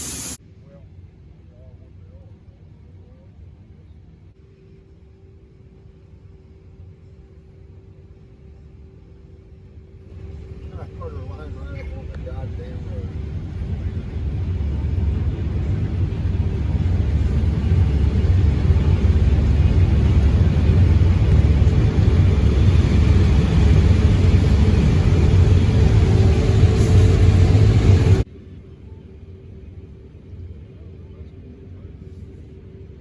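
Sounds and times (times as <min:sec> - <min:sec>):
heavy farm vehicle engine rumbling: 0:12.6 - 0:28.3.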